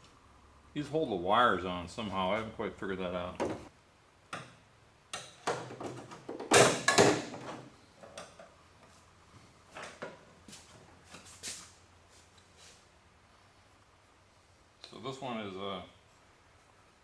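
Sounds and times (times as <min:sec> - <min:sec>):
objects scraping and knocking: 0:05.5 - 0:07.7.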